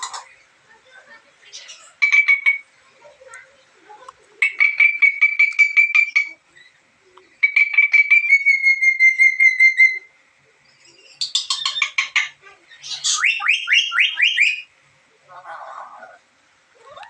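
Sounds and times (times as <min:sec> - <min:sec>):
parrot whistled calls: 0:04.4 - 0:06.4, 0:07.4 - 0:10.1, 0:11.0 - 0:14.7.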